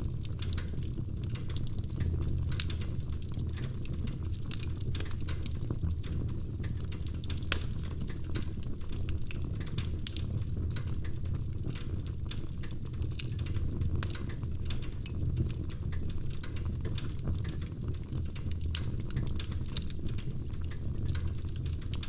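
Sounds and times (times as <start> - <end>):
low rumble of burning logs: 0.0 - 22.0
wood fire crackling: 0.0 - 22.0.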